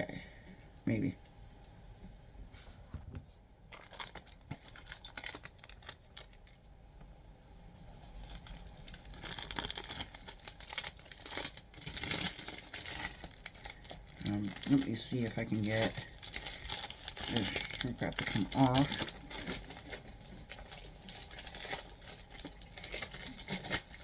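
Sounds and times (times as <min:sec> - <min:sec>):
plastic shrink wrap crinkling: 0:03.7 - 0:06.8, 0:08.0 - 0:24.0.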